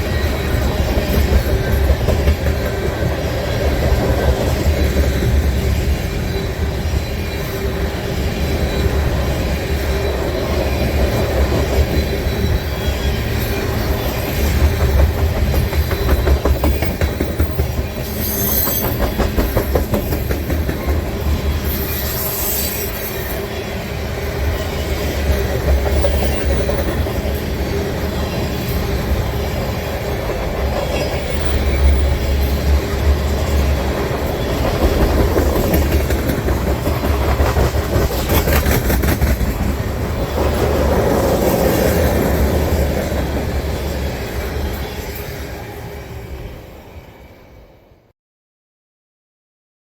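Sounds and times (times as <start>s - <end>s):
wheels clacking over rail joints: 0.0s - 5.4s, 13.4s - 23.4s, 24.6s - 44.9s
freight train rumbling past: 0.0s - 48.1s
high-pitched wheel squeals: 4.4s - 14.6s, 15.5s - 19.6s, 21.1s - 29.5s.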